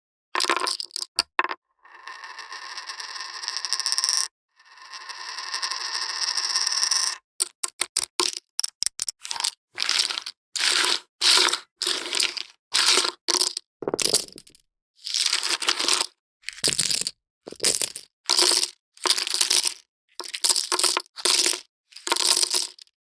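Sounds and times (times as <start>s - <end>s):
poker chips clattering: 0.4s - 1.5s, 16.6s - 22.9s.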